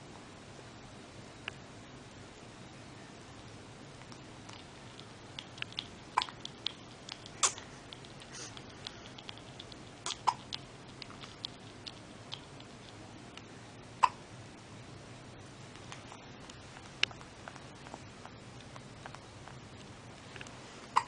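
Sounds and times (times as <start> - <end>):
baby hiccuping: 6.2 - 6.4, 7.4 - 7.6, 10.0 - 10.5, 14.0 - 14.2.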